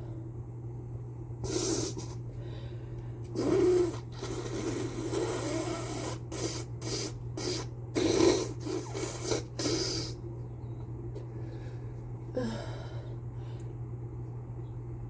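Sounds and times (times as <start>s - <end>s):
person breathing hard and sniffling: 1.4s - 10.2s, 11.3s - 13.7s.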